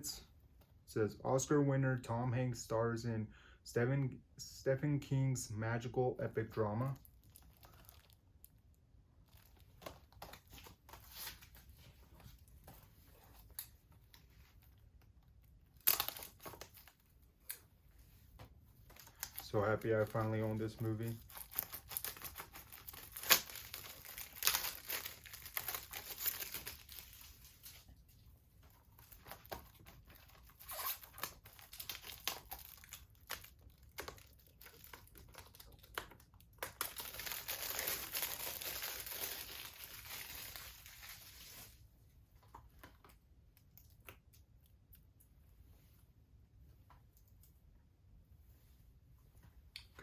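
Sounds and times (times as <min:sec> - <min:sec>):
shrink-wrap tearing and crinkling: 0:06.9 - 0:08.2, 0:15.7 - 0:17.1, 0:18.9 - 0:27.9, 0:28.9 - 0:41.8.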